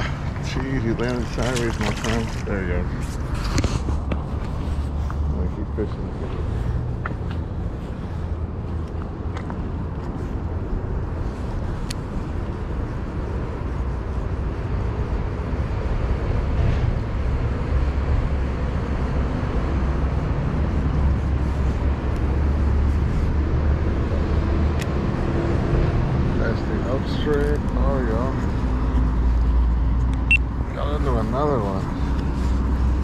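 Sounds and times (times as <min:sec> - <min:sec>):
low rumbling outdoor noise: 0:00.0 - 0:33.0.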